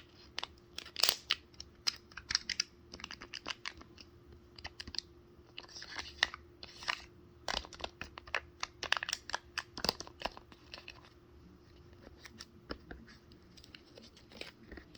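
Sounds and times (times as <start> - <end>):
fidget board clicks and crinkles: 0.0 - 11.1.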